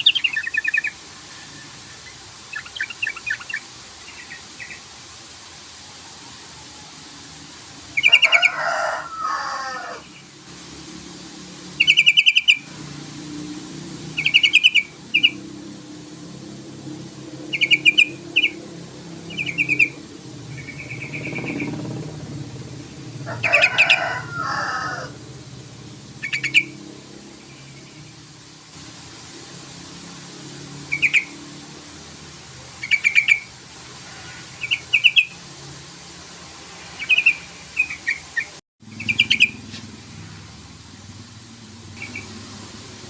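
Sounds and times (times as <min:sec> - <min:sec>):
bulbul chattering calls: 0:11.8 - 0:12.7, 0:14.2 - 0:15.4, 0:17.5 - 0:18.6, 0:19.3 - 0:21.8, 0:26.2 - 0:26.8, 0:30.9 - 0:31.3, 0:32.8 - 0:33.5, 0:34.2 - 0:35.3, 0:37.0 - 0:39.7.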